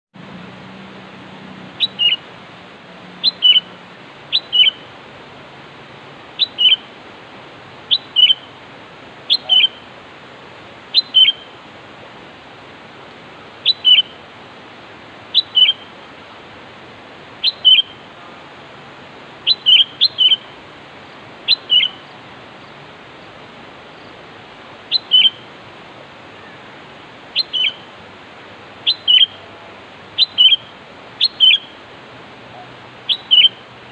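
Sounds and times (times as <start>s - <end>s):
steady hiss: 0.2s - 33.9s
bird two-note call: 9.3s - 9.8s, 28.9s - 29.6s, 30.2s - 31.7s, 33.1s - 33.6s.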